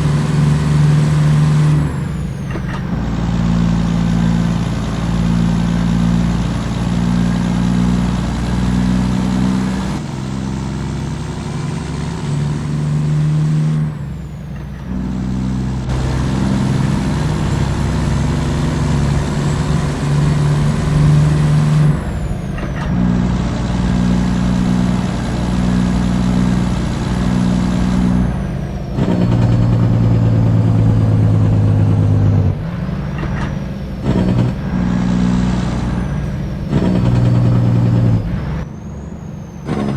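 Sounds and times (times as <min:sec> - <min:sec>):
loud truck diesel engine: 0:00.0 - 0:39.9.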